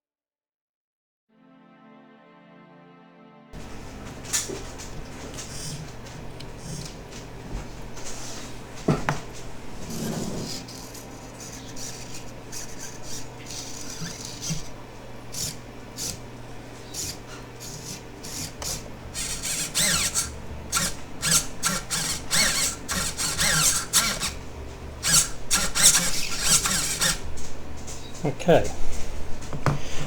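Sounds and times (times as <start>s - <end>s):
servo whines and gear chatter: 16.9s - 24.4s, 25.0s - 27.2s
servo clicks: 17.8s - 24.4s, 25.0s - 27.2s.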